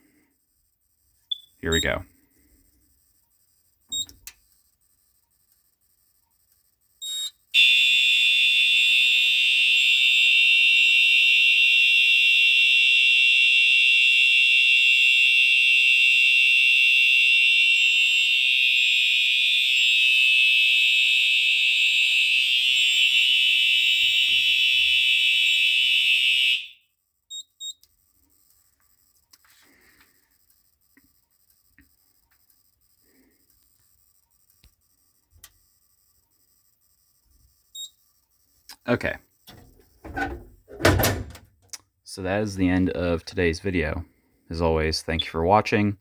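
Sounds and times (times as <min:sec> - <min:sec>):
fire alarm tone: 0:07.0 - 0:27.8.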